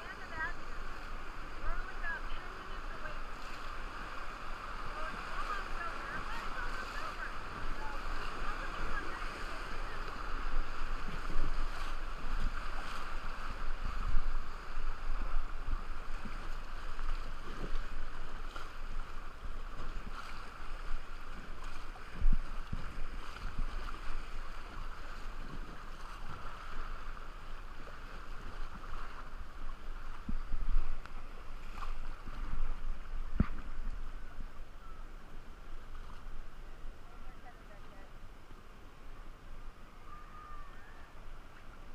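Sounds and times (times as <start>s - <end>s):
wind buffeting microphone: 0.0s - 27.0s
rushing river water: 0.0s - 41.9s.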